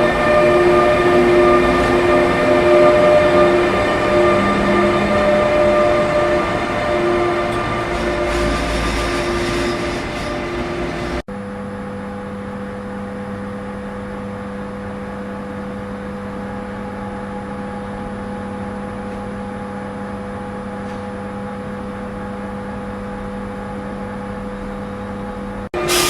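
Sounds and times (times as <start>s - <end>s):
train equipment humming: 0.0s - 11.2s.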